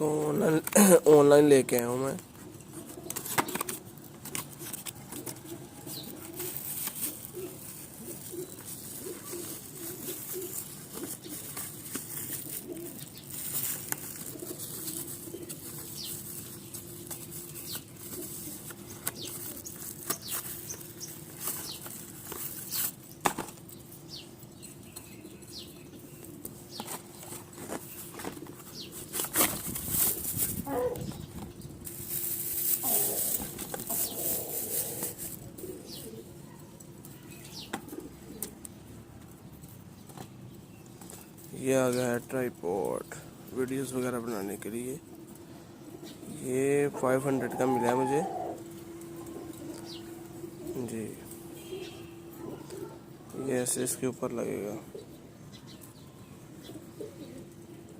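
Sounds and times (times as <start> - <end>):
packaging rustling and crinkling: 2.8 - 23.8, 26.5 - 36.1.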